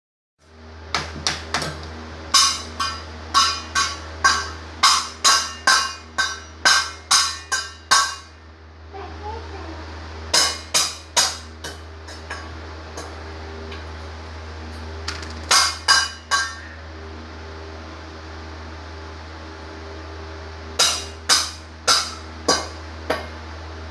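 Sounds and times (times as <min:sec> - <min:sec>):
steady low hum: 0:00.4 - 0:23.9
ringing object being struck: 0:02.4 - 0:08.4.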